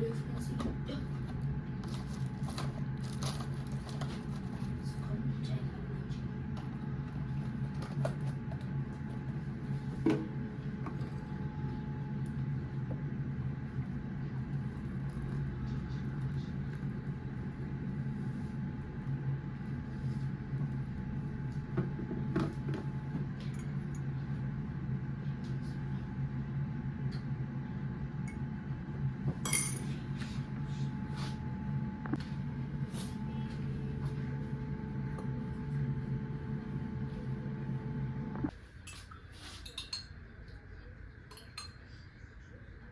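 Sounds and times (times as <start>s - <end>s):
steady low hum: 0.0s - 42.9s
dishes and cutlery clinking: 29.4s - 29.9s, 38.9s - 40.2s, 41.3s - 41.9s.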